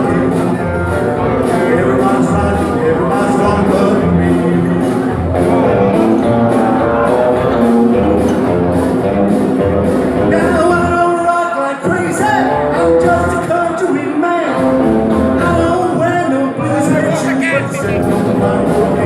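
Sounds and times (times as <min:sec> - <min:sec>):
rock and roll band playing: 0:00.0 - 0:19.0
person singing: 0:15.4 - 0:19.0.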